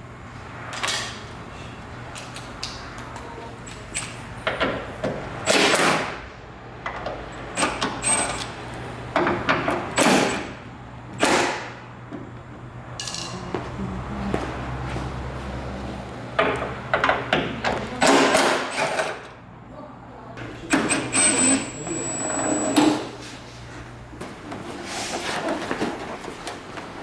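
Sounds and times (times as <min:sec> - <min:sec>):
knocks and clanks of car parts: 0:04.4 - 0:08.3, 0:09.1 - 0:12.3, 0:16.3 - 0:19.4
steady low hum: 0:08.5 - 0:18.0.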